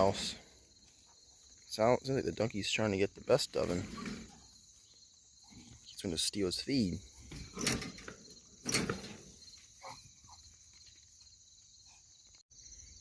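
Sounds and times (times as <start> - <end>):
crickets chirring: 0.0 - 13.0.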